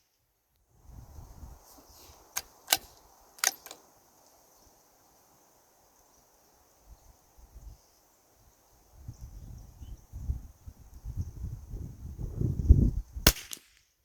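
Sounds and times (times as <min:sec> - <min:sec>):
rifle bolt metallic clicks: 0:02.4 - 0:03.8.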